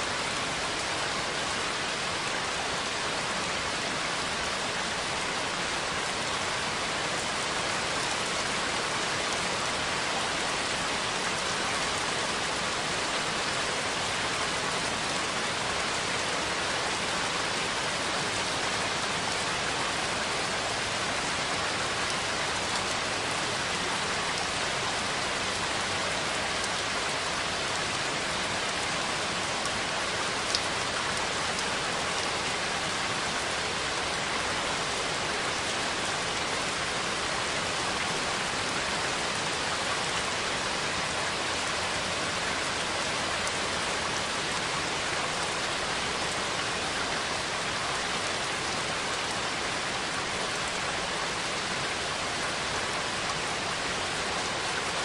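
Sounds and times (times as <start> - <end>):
steady rainfall: 0.0 - 55.0.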